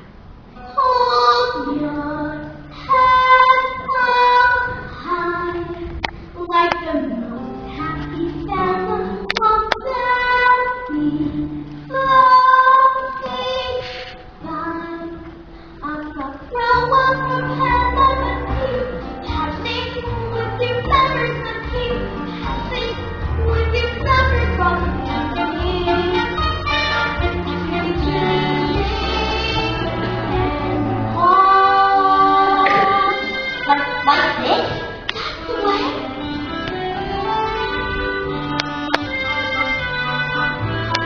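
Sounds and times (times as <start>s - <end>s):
child singing: 0.7s - 26.3s, 27.7s - 34.8s
instrumental accompaniment with bass: 0.9s - 41.0s.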